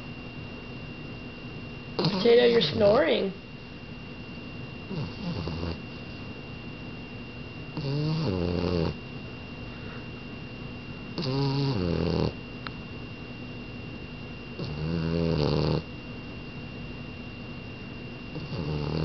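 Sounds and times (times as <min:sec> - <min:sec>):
dog snoring: 0:02.0 - 0:03.0, 0:04.9 - 0:05.8, 0:07.7 - 0:09.0, 0:11.1 - 0:12.4, 0:14.6 - 0:15.9, 0:18.3 - 0:19.0.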